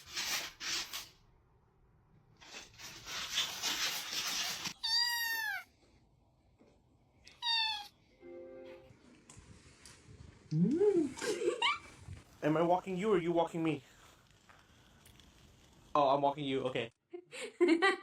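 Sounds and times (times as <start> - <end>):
cat meowing: 4.8 - 5.7, 7.3 - 8.0.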